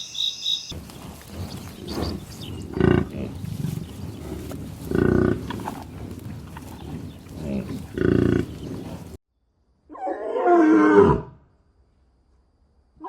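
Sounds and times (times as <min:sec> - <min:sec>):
loud rough animal call: 0:00.7 - 0:09.2.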